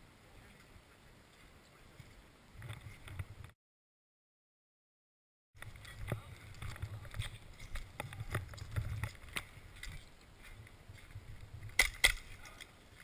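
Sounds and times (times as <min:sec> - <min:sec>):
handling clicks and rustling: 0:05.6 - 0:12.8.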